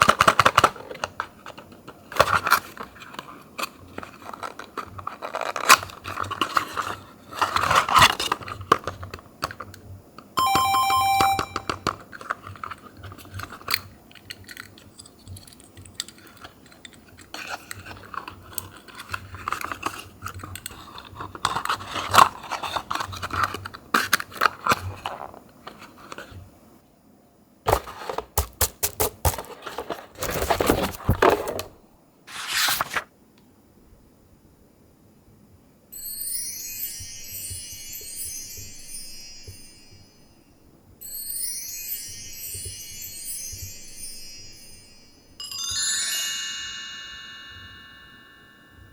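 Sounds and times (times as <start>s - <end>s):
short electronic tone: 10.4s - 11.8s
cardboard boxes scraping and crinkling: 29.3s - 31.7s, 32.3s - 33.1s.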